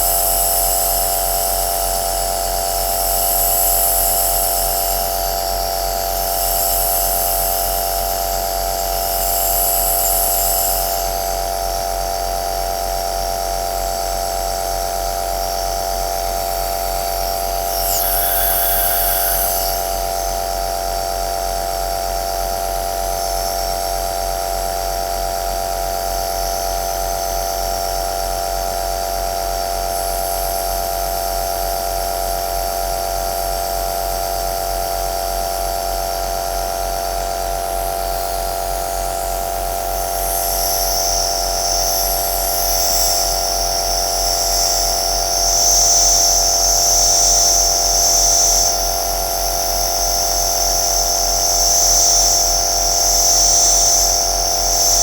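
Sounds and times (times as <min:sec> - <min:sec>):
nebulizer motor humming and hissing: 0:00.0 - 0:11.8, 0:16.2 - 0:21.2, 0:38.1 - 0:55.0.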